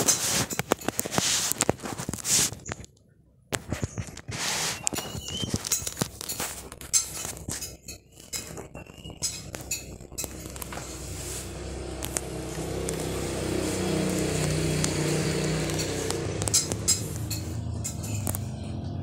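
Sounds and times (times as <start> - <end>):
dishes and cutlery clinking: 5.1 - 11.0, 15.0 - 18.6
steady noise: 5.8 - 18.4.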